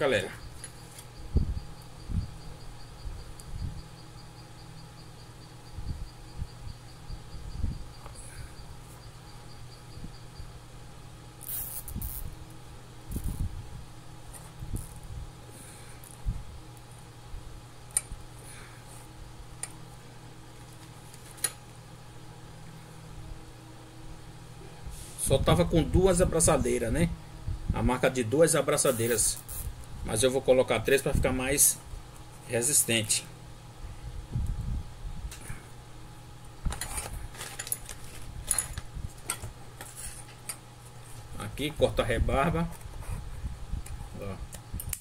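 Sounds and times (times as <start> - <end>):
low steady hum: 0.0 - 45.0
sharp clicks of small parts: 44.5 - 45.0.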